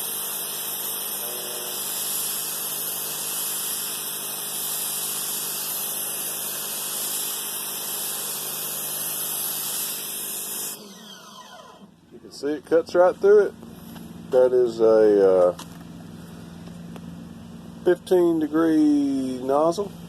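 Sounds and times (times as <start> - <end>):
high-pressure water jet hissing: 0.0 - 11.8
pressure washer pump humming: 0.0 - 20.0.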